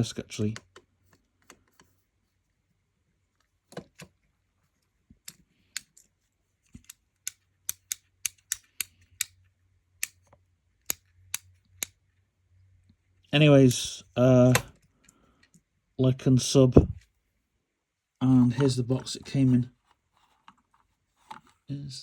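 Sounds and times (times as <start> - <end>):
fidget toy buttons clicking: 6.8 - 9.4.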